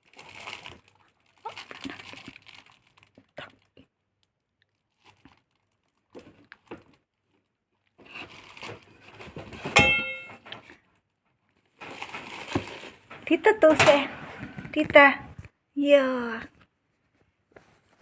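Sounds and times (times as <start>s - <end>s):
packaging crinkling and rustling: 0.0s - 9.8s, 11.6s - 15.5s.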